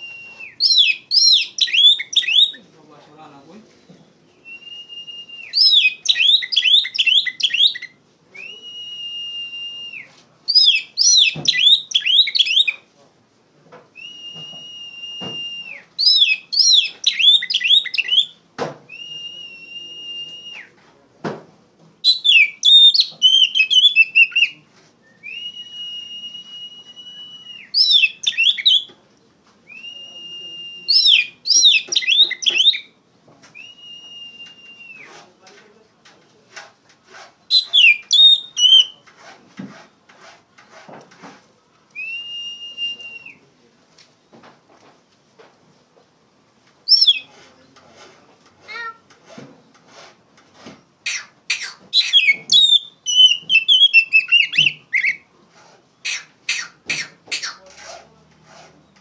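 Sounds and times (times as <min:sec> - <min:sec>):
bird singing whistled notes: 0:00.0 - 0:02.6, 0:04.3 - 0:12.8, 0:14.0 - 0:20.7, 0:22.0 - 0:28.9, 0:29.7 - 0:33.0, 0:33.6 - 0:35.1, 0:37.5 - 0:39.0, 0:42.0 - 0:43.4, 0:46.9 - 0:47.3, 0:51.1 - 0:55.2.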